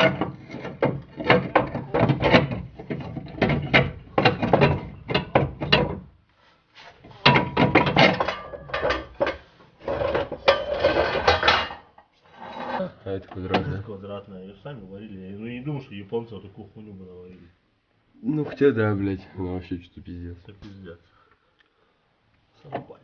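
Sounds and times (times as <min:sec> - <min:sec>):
metal tools clattering: 0:07.1 - 0:12.0.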